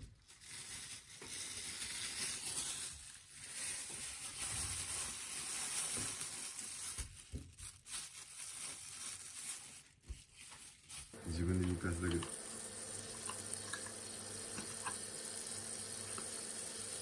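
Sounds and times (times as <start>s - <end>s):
food sizzling in a frying pan: 11.2s - 17.0s.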